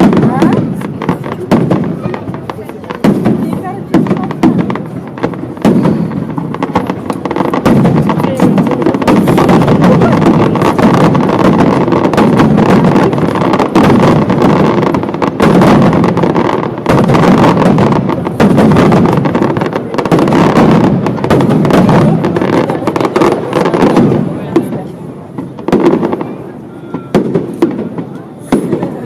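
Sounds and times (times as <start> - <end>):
fireworks shell bursts and bangs: 3.0 - 14.7.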